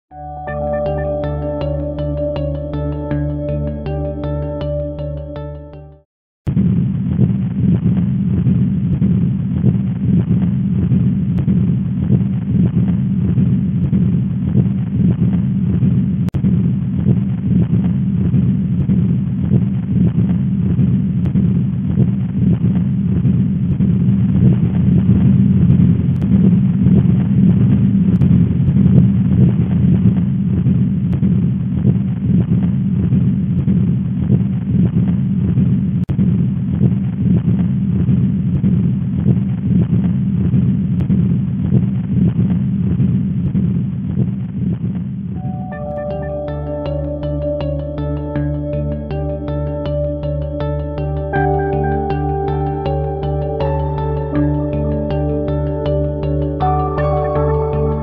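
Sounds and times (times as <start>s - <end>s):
heart murmur through stethoscope: 6.6s - 45.4s.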